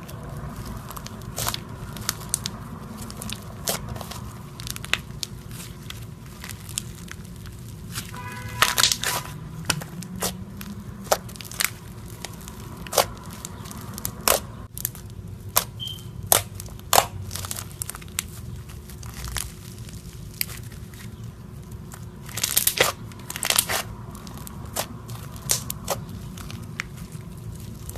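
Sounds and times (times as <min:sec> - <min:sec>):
slime popping and crackling: 0:00.0 - 0:27.9.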